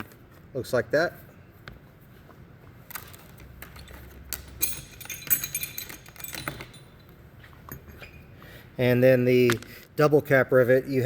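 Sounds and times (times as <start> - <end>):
metal rivet parts jingling: 2.9 - 8.4.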